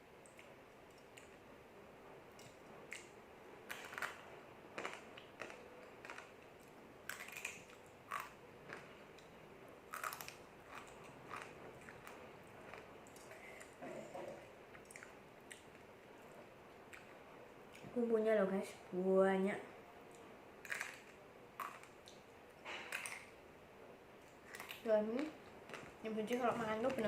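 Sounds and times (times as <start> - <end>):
crunching crispy noodle sticks: 3.7 - 4.2, 4.8 - 8.9, 9.9 - 13.6, 20.6 - 22.2.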